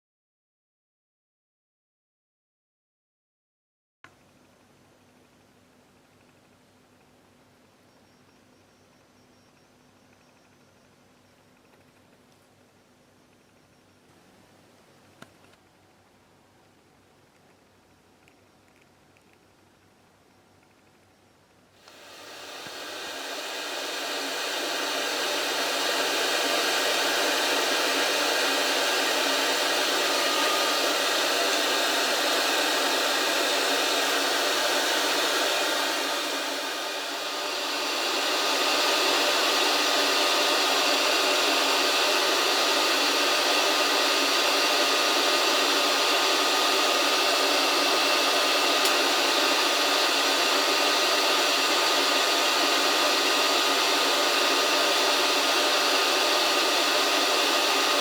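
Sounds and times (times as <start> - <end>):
hot air station blowing: 21.8 - 58.0.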